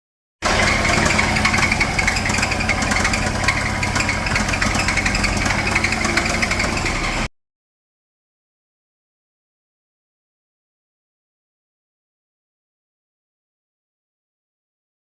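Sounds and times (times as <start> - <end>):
car engine idling: 0.4 - 7.3
fast ticking rattle: 0.4 - 7.3.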